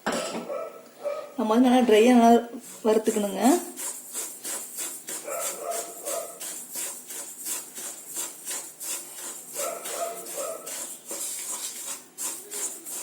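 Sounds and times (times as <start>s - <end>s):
spatula scraping roasting grain: 2.6s - 13.0s.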